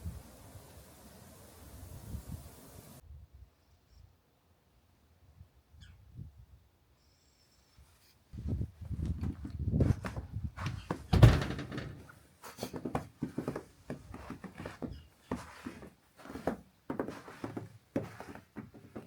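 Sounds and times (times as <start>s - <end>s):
heavy thump: 10.6s - 12.1s
footsteps through snow: 13.4s - 19.0s.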